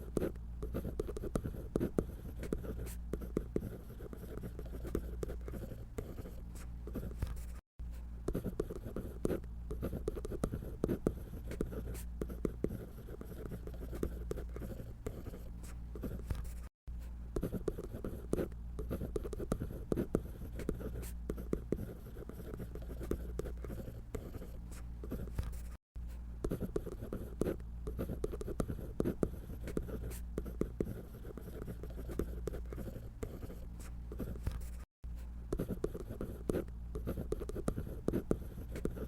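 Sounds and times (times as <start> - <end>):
pencil scratching on paper: 0.0 - 7.6, 8.3 - 16.7, 17.4 - 25.8, 26.4 - 34.9, 35.5 - 39.0.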